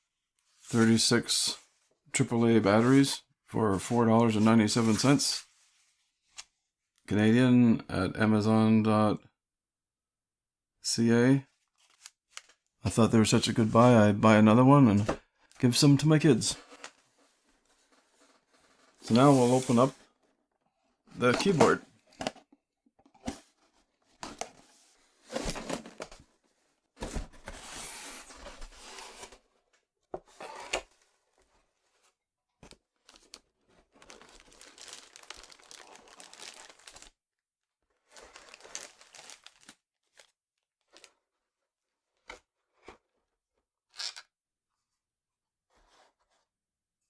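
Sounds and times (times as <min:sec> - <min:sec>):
packaging tearing and crinkling: 0:34.0 - 0:37.1, 0:38.2 - 0:40.2.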